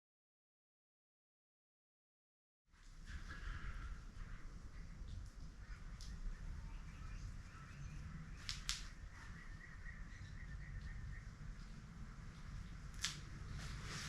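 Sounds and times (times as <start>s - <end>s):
bird chirping: 3.3s - 12.9s.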